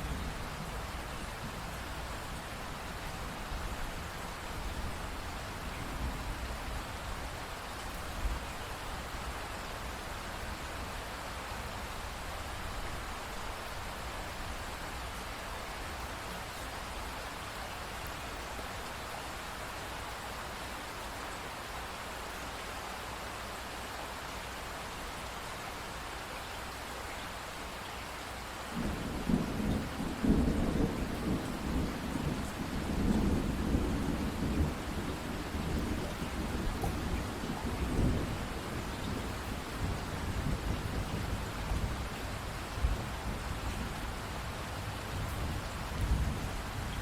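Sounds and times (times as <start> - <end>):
steady rain falling: 0.0 - 47.0
low rumble of thunder: 28.7 - 47.0.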